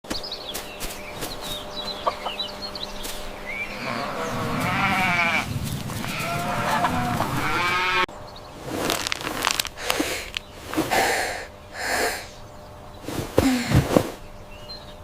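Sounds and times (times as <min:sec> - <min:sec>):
farm animal bleating: 0:03.4 - 0:08.1.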